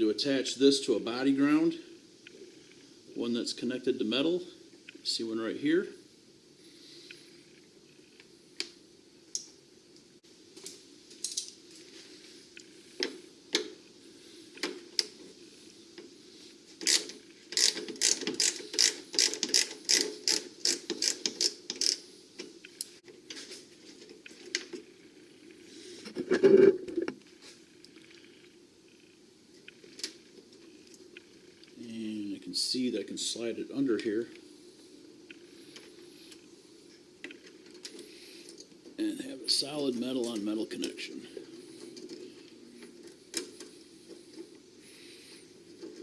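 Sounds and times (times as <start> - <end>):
ratchet wrench clicking: 16.8 - 22.0.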